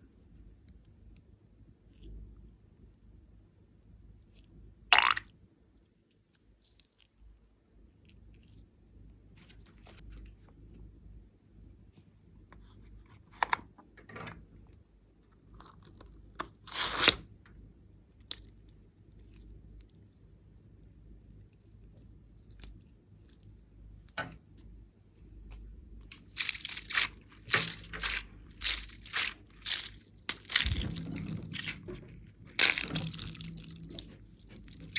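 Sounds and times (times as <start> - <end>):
crunchy crackles: 26.1 - 34.9.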